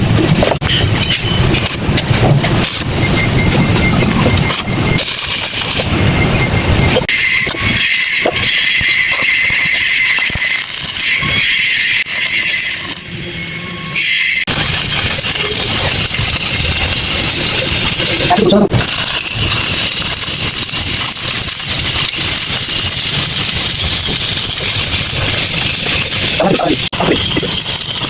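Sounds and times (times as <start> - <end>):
welding arc crackling: 0.0 - 13.3, 14.0 - 28.0.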